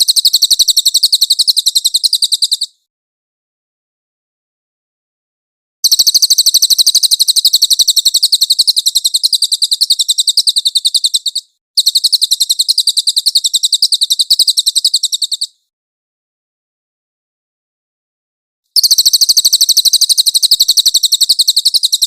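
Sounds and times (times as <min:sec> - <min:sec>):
bird high-pitched trills: 0:05.8 - 0:15.6, 0:18.8 - 0:22.0.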